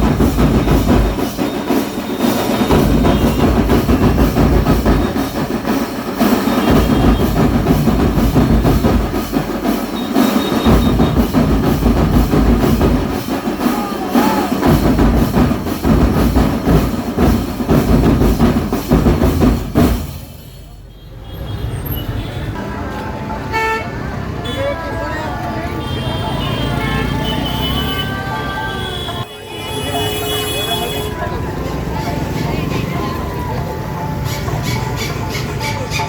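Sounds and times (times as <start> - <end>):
loud music with percussion beat: 0.0 - 20.8, 30.0 - 36.0.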